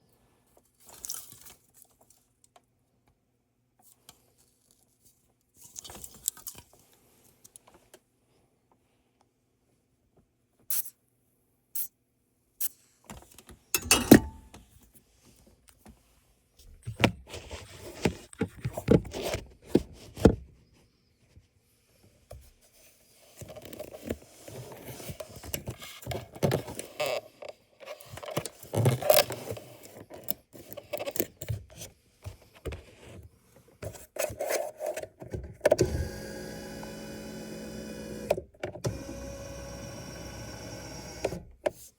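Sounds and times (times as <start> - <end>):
clicks and knocks: 13.8 - 14.6.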